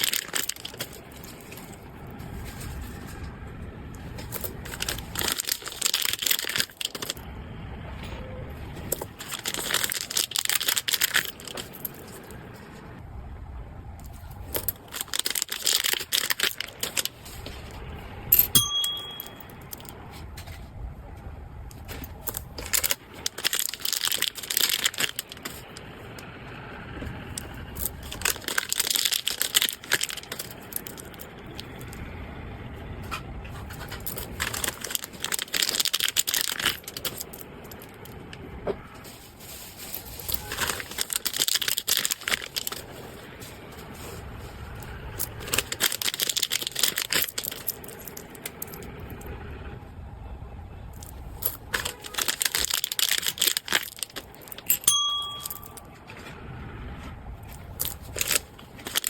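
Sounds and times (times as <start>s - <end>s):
packaging rustling and crinkling: 0.0s - 3.4s, 4.0s - 7.2s, 8.8s - 12.4s, 14.1s - 17.8s, 21.8s - 25.9s, 27.4s - 31.9s, 33.5s - 38.1s, 38.8s - 48.8s, 51.0s - 54.7s, 57.5s - 59.0s
short ringing clink: 18.4s - 19.7s, 54.7s - 55.9s.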